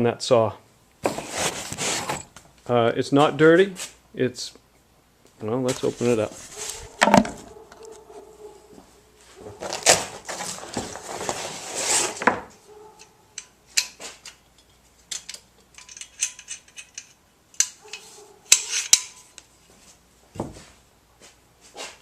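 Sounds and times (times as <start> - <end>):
scraping and rustling: 1.0 - 2.5, 5.7 - 16.9.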